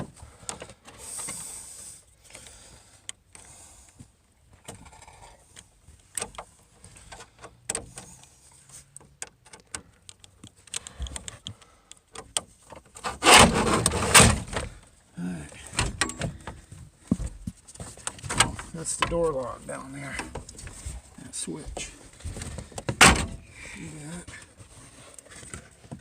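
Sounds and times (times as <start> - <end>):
loud scraping rattle: 13.0 - 14.8.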